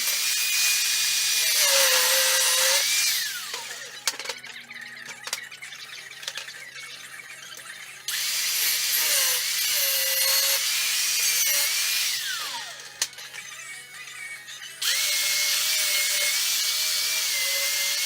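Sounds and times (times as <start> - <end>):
power tool whining: 0.0 - 4.1, 8.1 - 18.0.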